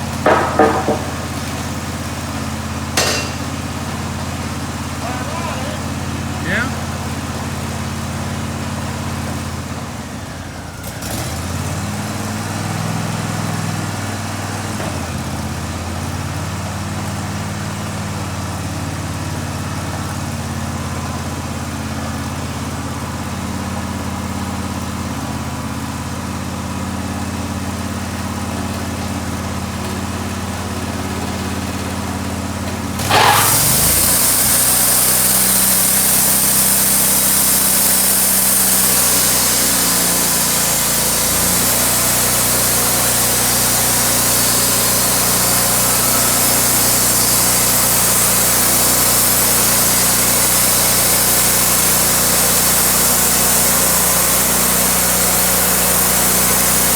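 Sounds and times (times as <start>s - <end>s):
saw cutting wood hiss: 0.0s - 1.8s, 3.0s - 7.9s, 32.9s - 56.9s
sawmill engine running: 0.0s - 56.9s.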